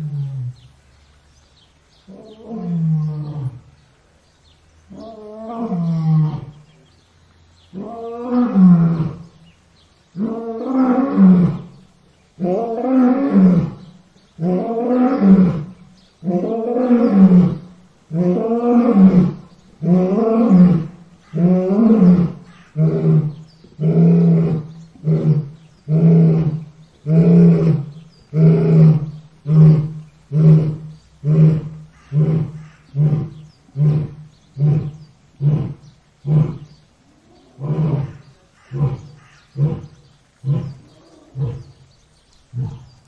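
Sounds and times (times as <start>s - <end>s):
lion roaring: 14.4s - 36.7s, 37.4s - 41.8s, 42.5s - 43.0s
lion grunting roars: 37.4s - 41.8s, 42.5s - 43.0s.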